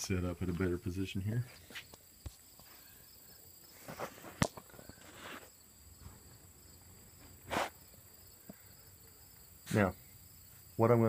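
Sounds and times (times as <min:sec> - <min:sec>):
camera handling rustles and scuffs: 0:03.8 - 0:05.6.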